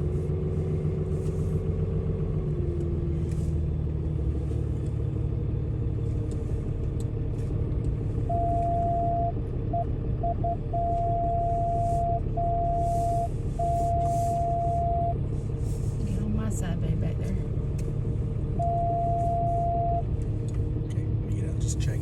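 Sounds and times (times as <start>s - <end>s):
truck engine and road rumble: 0.0s - 22.0s
electronic beeps: 8.3s - 15.2s, 18.6s - 20.0s.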